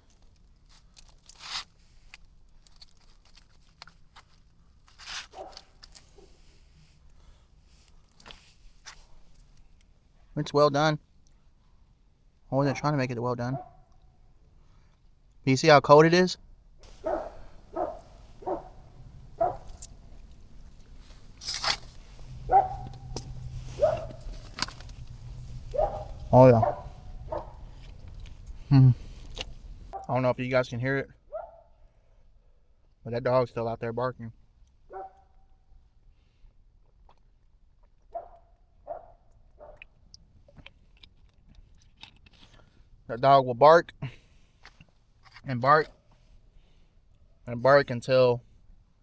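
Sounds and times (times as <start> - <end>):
short crunch: 0.0 - 6.8, 16.8 - 30.0
dog barking: 5.3 - 6.3, 13.5 - 13.9, 16.9 - 19.8, 22.4 - 24.3, 25.7 - 27.7, 31.3 - 31.7, 34.9 - 35.3, 38.1 - 39.8.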